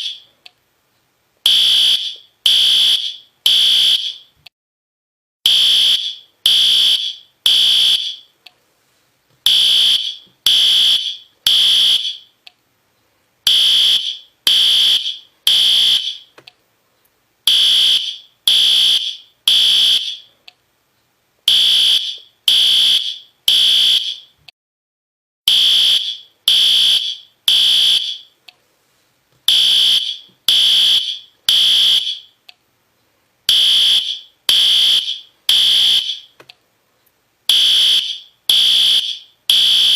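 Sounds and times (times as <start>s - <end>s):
high-pitched fire alarm horn blasts: 1.5s - 4.3s, 5.5s - 8.3s, 9.5s - 12.3s, 13.5s - 16.3s, 17.5s - 20.3s, 21.5s - 24.3s, 25.5s - 28.3s, 29.5s - 32.4s, 33.5s - 36.3s, 37.5s - 39.9s.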